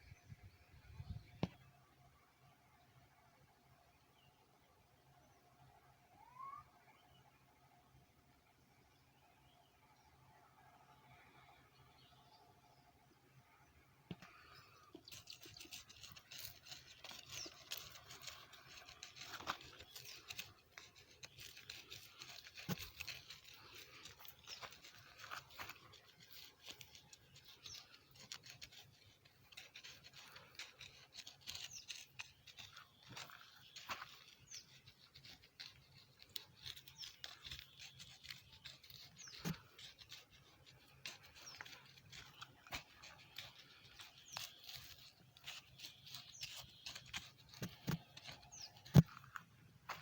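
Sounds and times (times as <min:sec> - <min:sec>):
scraping of soil: 0:14.1 - 0:50.0.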